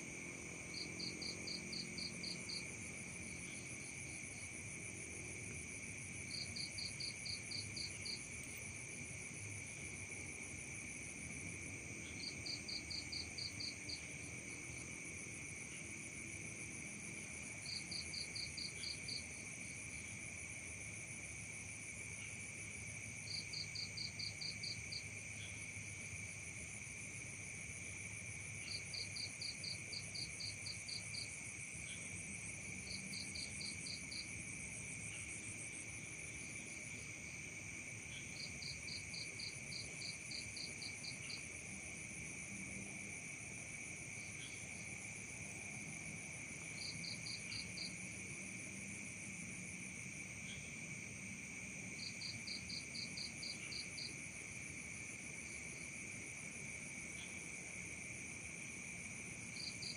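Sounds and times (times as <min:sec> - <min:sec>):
crickets and insects trilling: 0:00.0 - 0:59.9.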